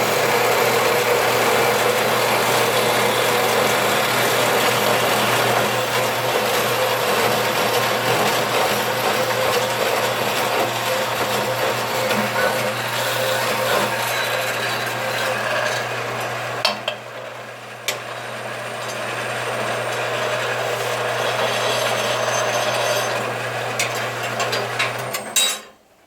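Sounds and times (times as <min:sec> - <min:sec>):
band saw cutting metal: 0:00.0 - 0:25.5.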